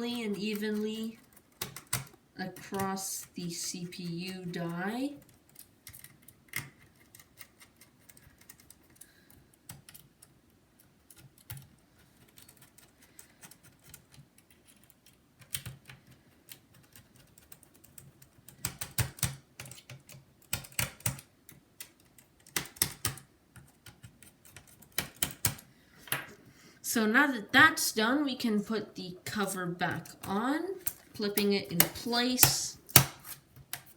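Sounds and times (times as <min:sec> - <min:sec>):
small clicks and taps on laptop: 0:05.2 - 0:26.4.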